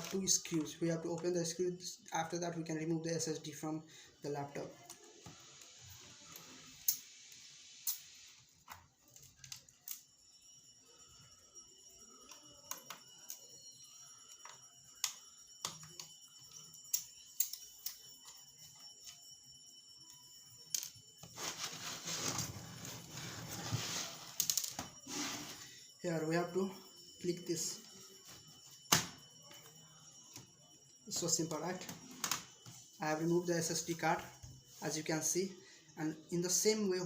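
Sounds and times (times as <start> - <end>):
scraping and rustling: 21.3 - 24.4.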